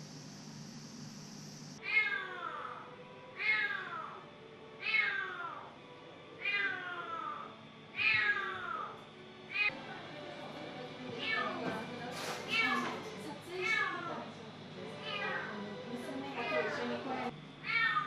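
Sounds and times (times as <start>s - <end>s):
cat meowing: 1.8s - 2.8s, 3.4s - 4.2s, 4.8s - 5.7s, 6.4s - 9.7s, 11.2s - 11.5s, 12.5s - 12.9s, 13.6s - 14.1s, 15.0s - 15.5s, 17.6s - 18.0s.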